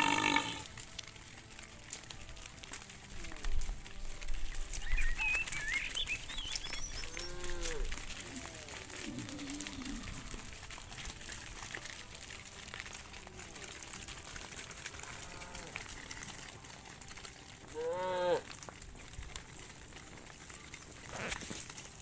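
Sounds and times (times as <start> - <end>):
cows mooing: 0.0 - 0.7, 7.0 - 10.8, 14.8 - 16.4, 17.7 - 18.6
birds chirping: 4.6 - 10.1.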